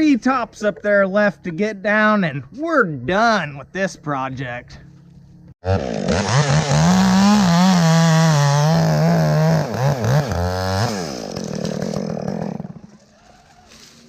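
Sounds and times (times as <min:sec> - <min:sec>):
chainsaw revving: 0:05.6 - 0:13.0.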